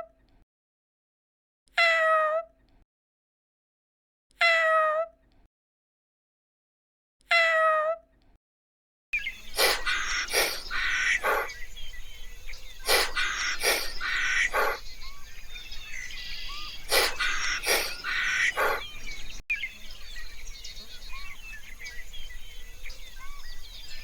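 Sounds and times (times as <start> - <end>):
repeated paired animal calls: 9.2 - 19.4
outdoor background noise: 9.2 - 24.0.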